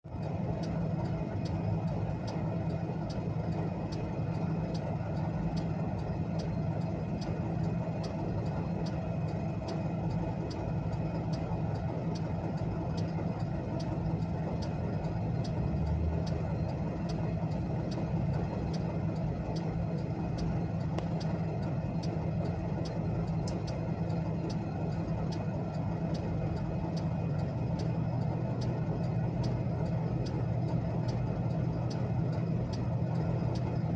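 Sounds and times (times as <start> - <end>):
engine idling hum: 0.0 - 33.9
hazard flasher relay ticking: 0.1 - 33.9.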